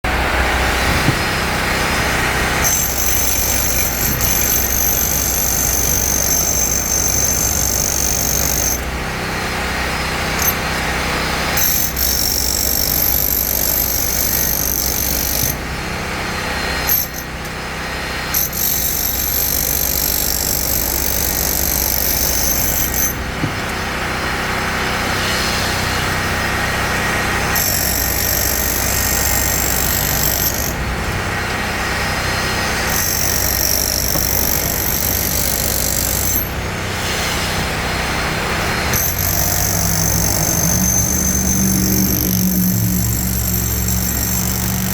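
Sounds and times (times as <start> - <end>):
wood chipper engine droning: 0.0 - 18.4, 20.0 - 44.9
high whine: 36.4 - 44.9.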